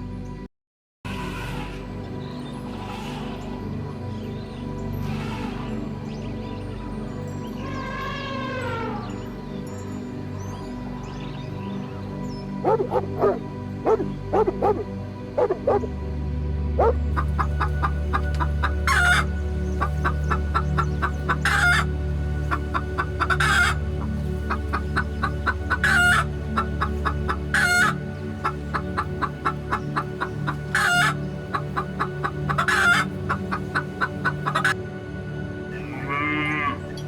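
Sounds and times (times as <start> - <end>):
chickens clucking: 12.6 - 14.8, 16.8 - 34.8.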